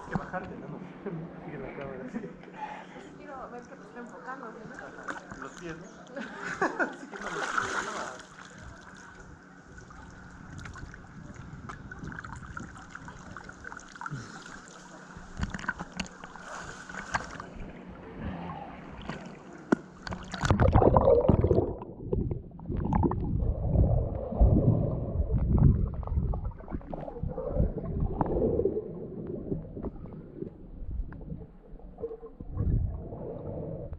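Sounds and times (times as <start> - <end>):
muffled water sloshing and gurgling: 7.2 - 33.9
irregular low rumbling: 20.5 - 33.9.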